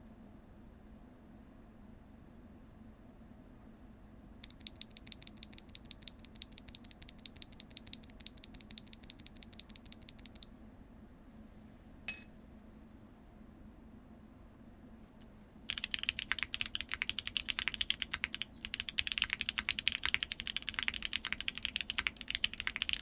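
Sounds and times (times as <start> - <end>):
mechanical keyboard keystrokes: 4.4 - 10.5, 15.7 - 23.0.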